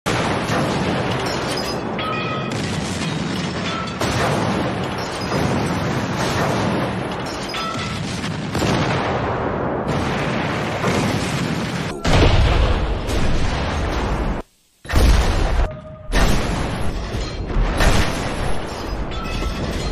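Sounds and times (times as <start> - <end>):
heavy guns booming: 0.1 - 19.9
shells exploding: 0.1 - 19.9.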